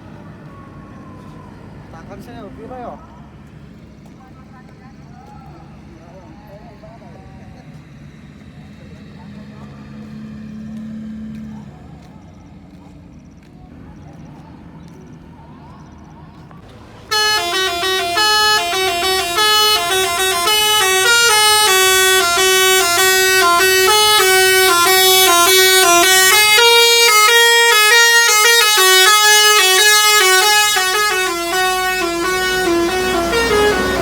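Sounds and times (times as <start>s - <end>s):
bus musical horn playing a tune: 17.1s - 34.0s.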